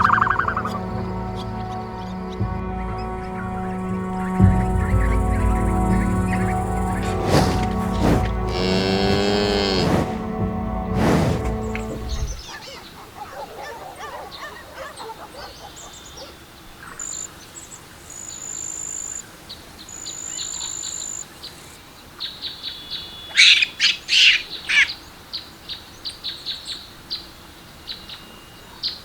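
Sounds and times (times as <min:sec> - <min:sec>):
thin high whistles: 0:00.0 - 0:00.8, 0:06.4 - 0:10.3
small birds chirping: 0:00.0 - 0:10.3, 0:11.0 - 0:29.0.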